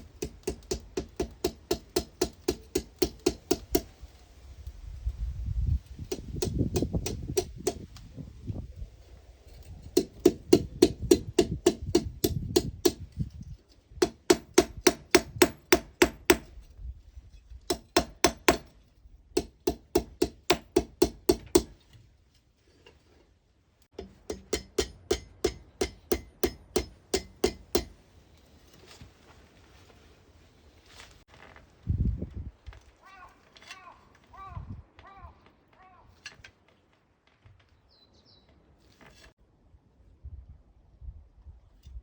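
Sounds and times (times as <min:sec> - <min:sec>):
hammer striking metal: 0:17.7 - 0:18.8, 0:24.0 - 0:28.0.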